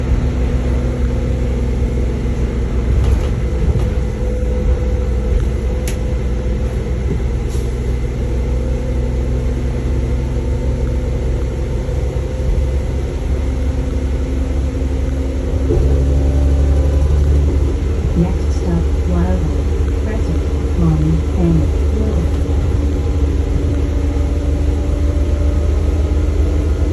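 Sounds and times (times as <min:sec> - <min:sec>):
bus engine running: 0:00.0 - 0:26.9.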